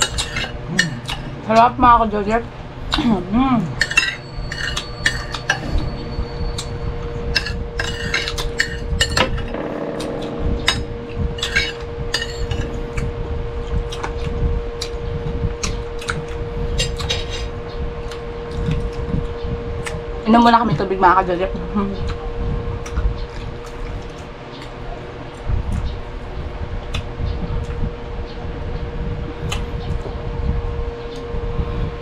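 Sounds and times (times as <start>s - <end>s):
steady low hum: 0.0s - 32.0s
cutlery clinking on plates: 3.8s - 5.6s.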